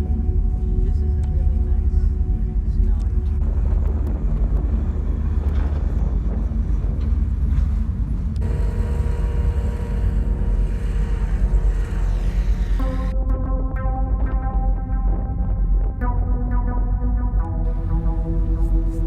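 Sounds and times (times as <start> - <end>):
steady hum: 0.0 - 13.2
blizzard wind rumbling on microphone: 0.3 - 8.5.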